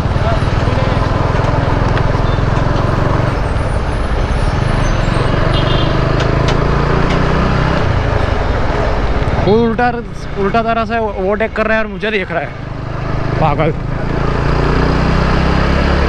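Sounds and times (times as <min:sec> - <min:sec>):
motorcycle engine running: 0:00.0 - 0:10.8.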